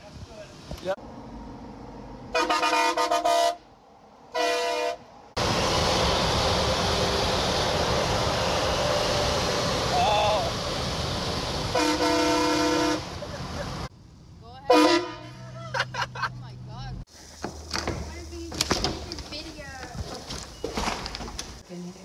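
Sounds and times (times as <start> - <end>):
train horns sounding a chord: 2.3 - 3.7, 4.3 - 5.0, 11.7 - 13.2, 14.7 - 15.4
loud steady rushing noise: 5.4 - 13.9.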